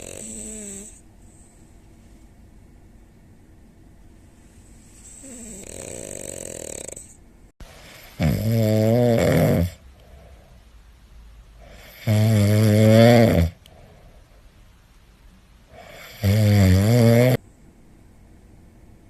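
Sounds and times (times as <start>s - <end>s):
person snoring: 0.0s - 1.0s, 5.0s - 7.2s, 8.1s - 9.8s, 11.7s - 13.6s, 15.8s - 17.4s.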